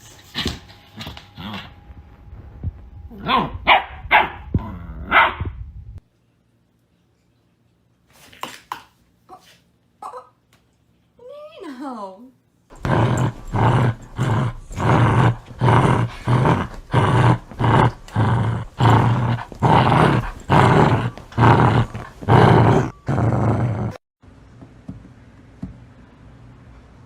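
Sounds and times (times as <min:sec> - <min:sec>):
dog growling: 0:04.6 - 0:05.2, 0:12.7 - 0:24.0.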